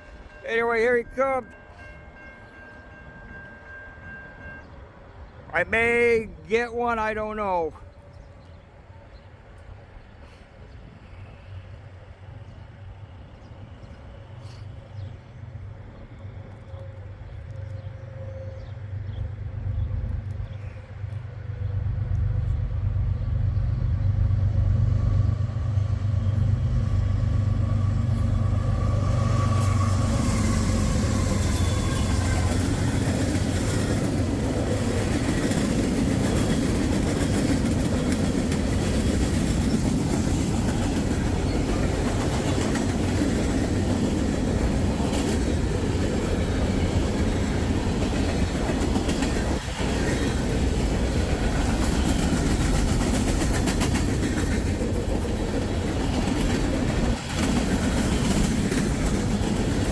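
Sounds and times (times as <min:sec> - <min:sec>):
locomotive engine drone: 0:11.1 - 0:59.9
train wheels rolling over rails: 0:23.2 - 0:59.9.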